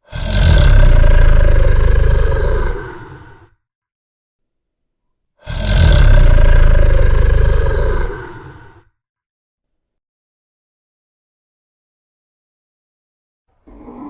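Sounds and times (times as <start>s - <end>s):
dragon fire-breath roaring blast: 0.1s - 2.9s, 5.5s - 8.3s.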